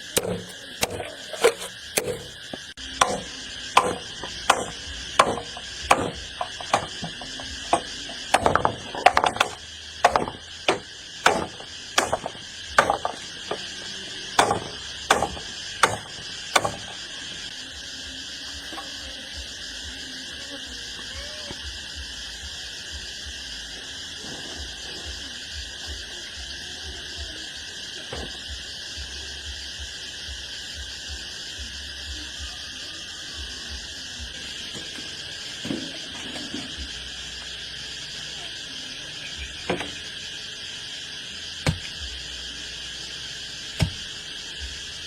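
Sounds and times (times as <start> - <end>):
tool striking wood: 0.0 - 17.0, 41.6 - 42.0, 43.8 - 44.0.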